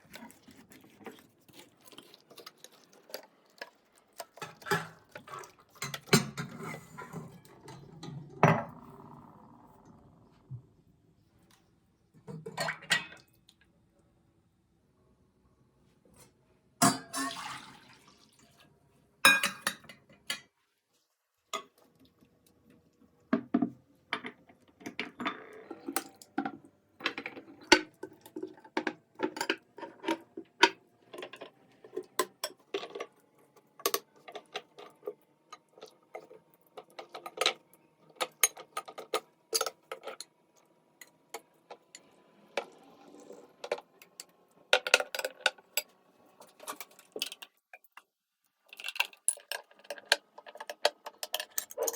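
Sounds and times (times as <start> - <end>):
cutlery and dishes clinking: 0.1 - 8.8, 16.8 - 17.5, 19.3 - 20.5, 33.8 - 40.3, 48.8 - 51.9.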